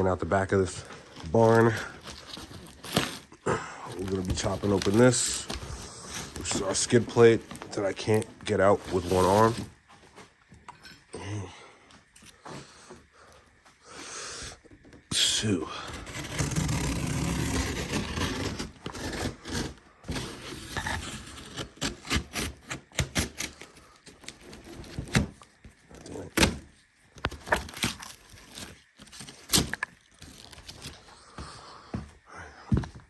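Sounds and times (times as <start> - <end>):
cardboard box being torn open: 0.8 - 9.7, 15.8 - 25.4, 26.0 - 31.0.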